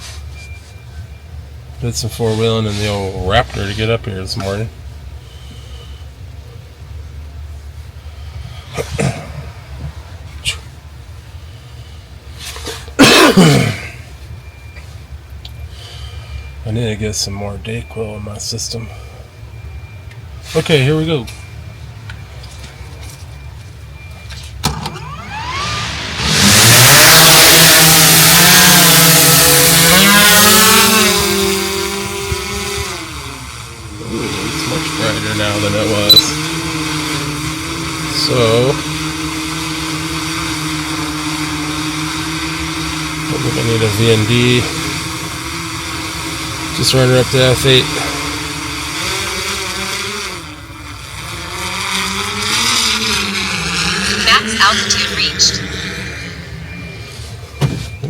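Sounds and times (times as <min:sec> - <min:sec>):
drone motors whining: 0:19.4 - 0:58.0
drone propellers buzzing: 0:24.6 - 0:57.4.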